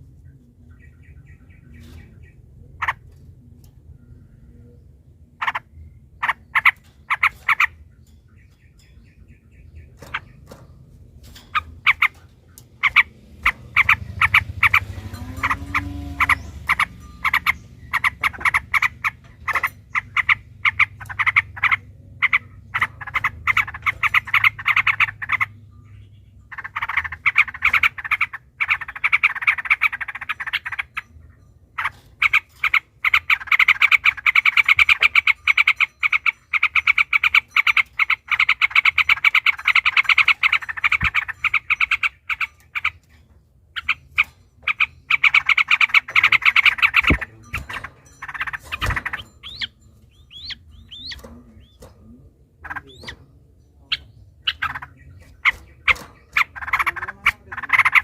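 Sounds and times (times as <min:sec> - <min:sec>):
low hum: 0:00.0 - 0:24.6
bulbuls chattering calls: 0:00.7 - 0:03.4, 0:05.3 - 0:58.0.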